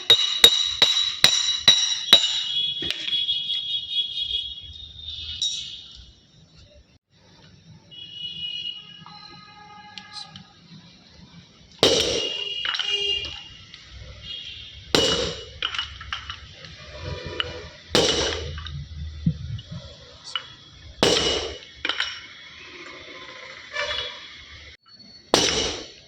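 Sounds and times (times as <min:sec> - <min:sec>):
hammer striking metal: 0:00.0 - 0:02.6, 0:11.8 - 0:13.4, 0:14.9 - 0:16.4, 0:17.9 - 0:18.8, 0:20.3 - 0:22.3, 0:25.3 - 0:26.0.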